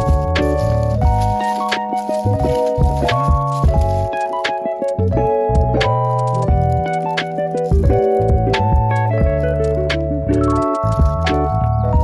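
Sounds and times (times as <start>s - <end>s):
bass line: 0.0s - 1.4s, 2.3s - 4.1s, 5.0s - 7.0s, 7.8s - 12.0s
sustained keyboard notes: 0.0s - 12.0s.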